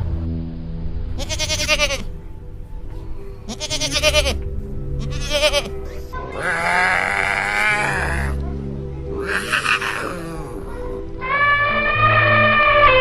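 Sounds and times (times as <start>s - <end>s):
background music: 0.0s - 13.0s
animal bleating: 1.2s - 2.1s, 3.5s - 4.4s, 5.0s - 8.4s, 9.2s - 13.0s.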